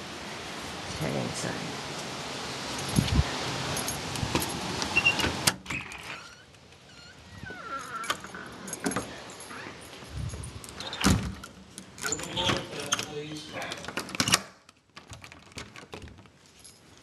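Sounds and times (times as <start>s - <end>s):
wind noise: 2.5s - 11.4s
door clicks and rattles: 7.5s - 9.3s, 10.7s - 16.3s.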